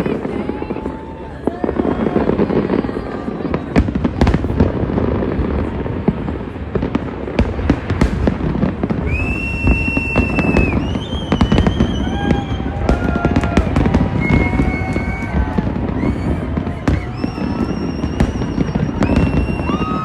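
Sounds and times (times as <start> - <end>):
fireworks bangs and crackles: 0.0 - 20.0
firework whistles: 8.0 - 20.0.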